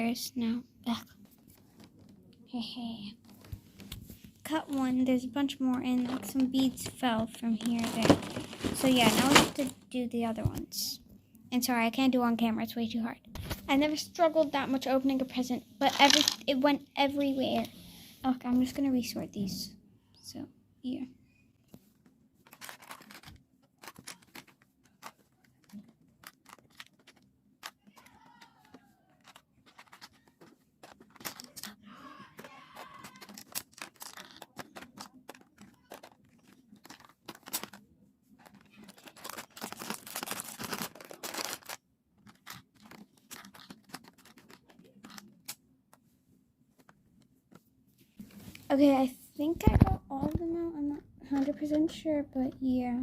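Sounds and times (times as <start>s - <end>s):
plastic and cardboard crinkling: 3.1s - 10.6s, 15.1s - 16.5s, 21.7s - 46.1s
packaging rustling: 5.9s - 9.8s, 22.4s - 45.6s
packaging clicks: 22.4s - 31.8s, 32.4s - 37.8s, 38.4s - 45.6s.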